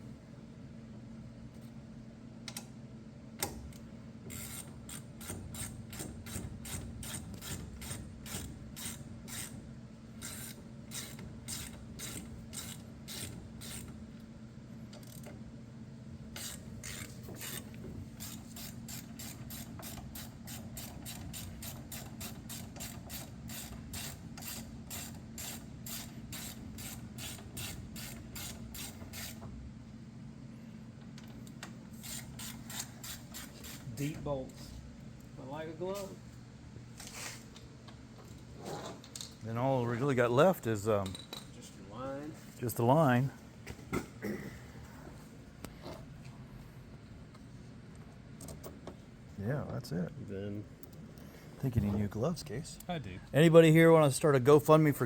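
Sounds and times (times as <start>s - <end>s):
hand ratchet clicking: 10.2s - 13.9s, 16.4s - 17.6s.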